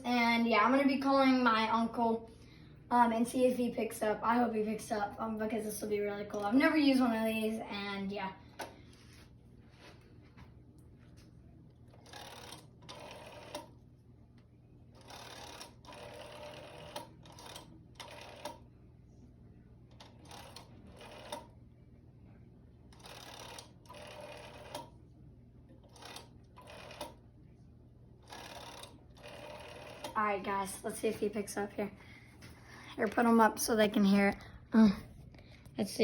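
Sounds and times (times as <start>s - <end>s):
rotary telephone dialling: 11.9s - 13.8s, 15.0s - 18.6s, 19.9s - 21.5s, 22.9s - 24.9s, 25.8s - 27.2s, 28.2s - 30.2s.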